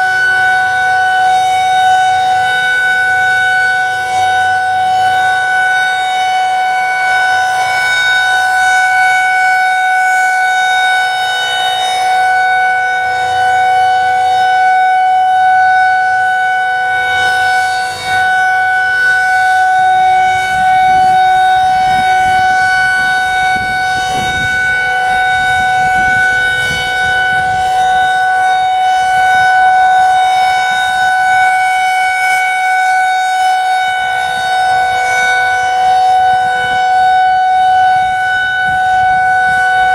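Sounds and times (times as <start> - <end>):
outdoor warning siren steady tone: 0.0 - 39.9.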